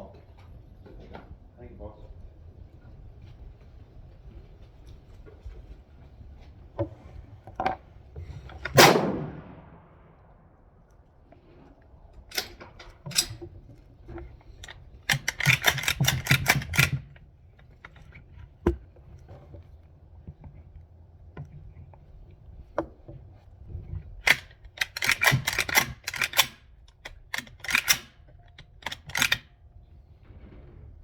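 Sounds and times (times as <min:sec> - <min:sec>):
gunshots: 0:08.8 - 0:09.8
gunshot echo: 0:08.8 - 0:10.1.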